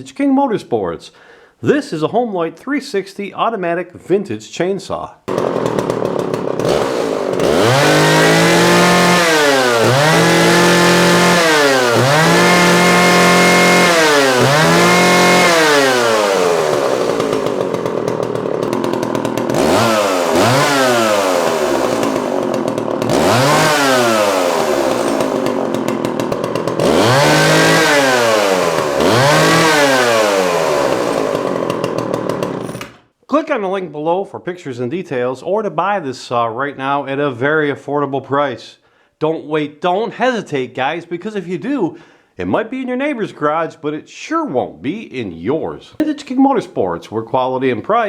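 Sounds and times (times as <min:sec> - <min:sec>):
chainsaw idling and revving: 0:05.3 - 0:33.0.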